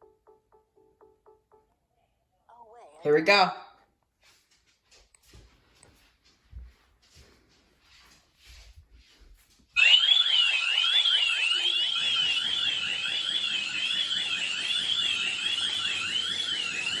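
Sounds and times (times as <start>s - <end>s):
warbling electronic alarm siren: 9.8s - 17.0s.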